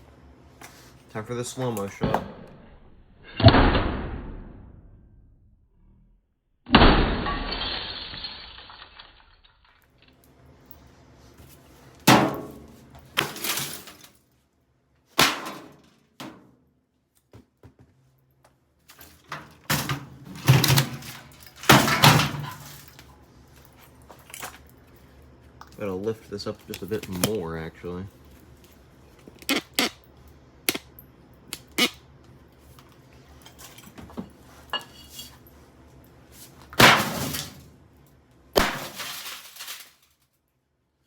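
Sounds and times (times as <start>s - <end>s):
hammer smashing metal: 6.7s - 9.4s, 36.8s - 37.6s, 38.6s - 39.9s
glass breaking: 6.7s - 9.9s, 38.6s - 40.0s.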